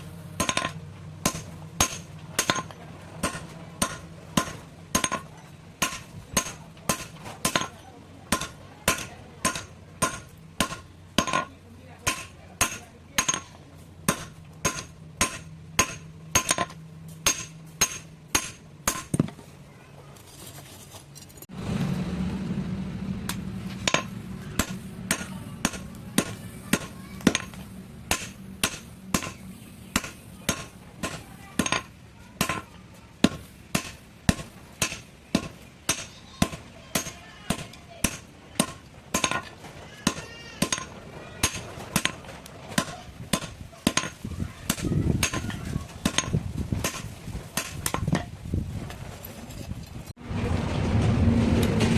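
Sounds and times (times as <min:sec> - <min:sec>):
hammer striking metal: 0:00.0 - 0:19.4, 0:23.3 - 0:48.3
steady low hum: 0:00.0 - 0:20.2, 0:21.1 - 0:40.0.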